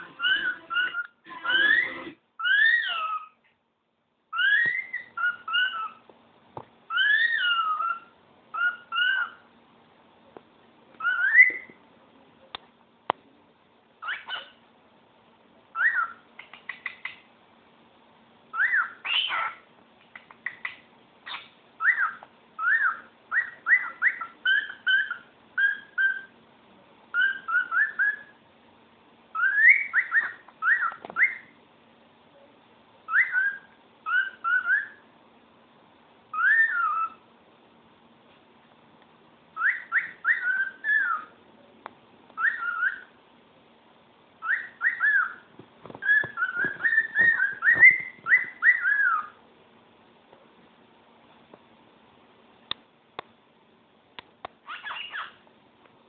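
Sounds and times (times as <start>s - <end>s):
cockatiel whistling: 0.1s - 3.4s, 4.3s - 6.0s, 6.9s - 9.4s, 11.0s - 11.8s, 15.8s - 16.2s, 18.5s - 19.6s, 21.3s - 26.3s, 27.1s - 28.4s, 29.3s - 31.5s, 33.1s - 35.0s, 36.3s - 37.2s, 39.6s - 41.3s, 42.4s - 43.2s, 44.4s - 49.4s.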